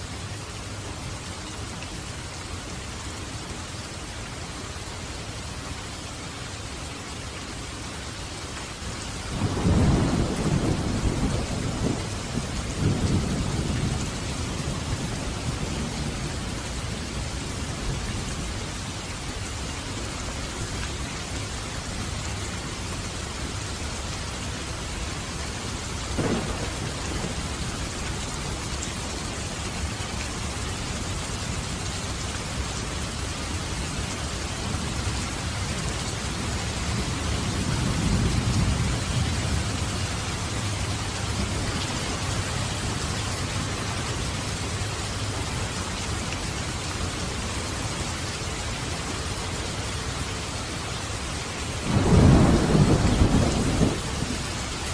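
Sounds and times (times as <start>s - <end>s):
heavy rain: 0.0s - 54.9s
thunder rumbling: 9.4s - 17.4s, 26.2s - 28.6s, 51.9s - 54.4s
thunder crack: 26.2s - 27.5s.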